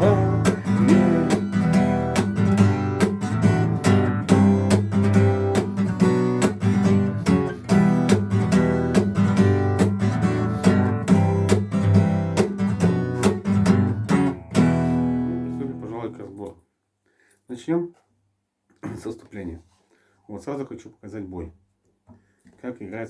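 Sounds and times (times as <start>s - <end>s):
acoustic guitar strumming chords: 0.0s - 16.1s.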